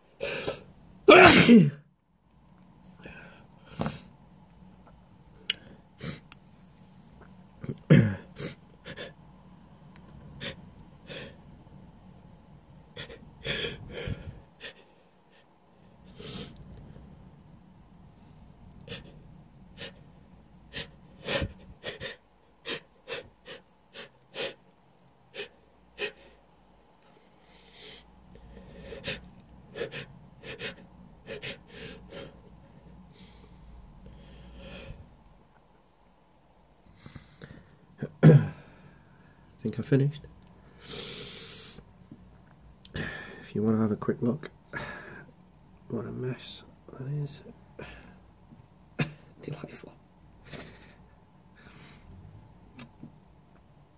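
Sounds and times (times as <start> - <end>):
person sneezing: 0.2 - 1.8.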